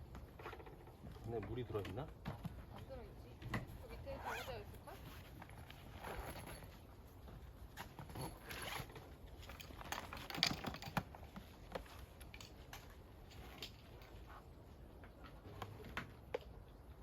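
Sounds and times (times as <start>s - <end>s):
small objects clicking and rustling: 7.8s - 14.2s.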